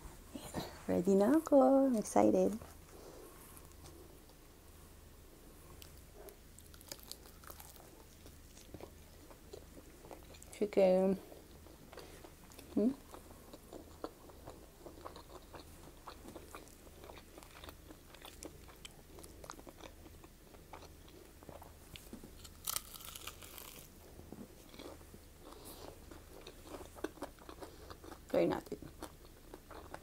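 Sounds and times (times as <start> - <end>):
person chewing crispy chicken: 5.8 - 10.6, 11.4 - 30.0.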